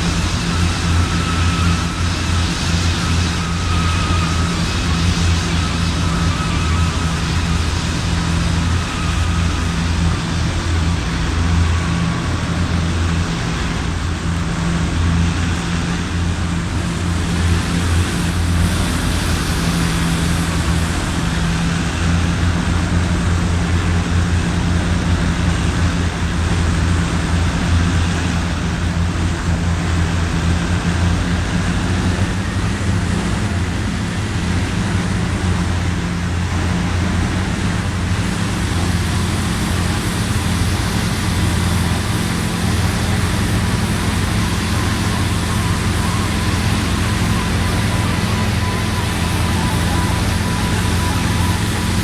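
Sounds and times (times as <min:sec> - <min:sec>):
steady low drone: 0:00.0 - 0:52.0
strong wind on microphone: 0:00.0 - 0:52.0
rain: 0:32.8 - 0:52.0.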